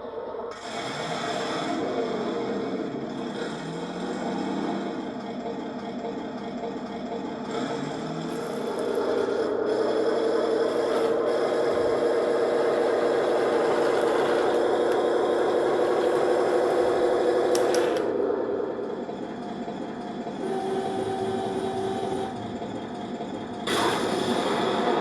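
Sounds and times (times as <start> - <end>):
model tank grinding rasp: 0.5 - 5.6, 7.4 - 18.1.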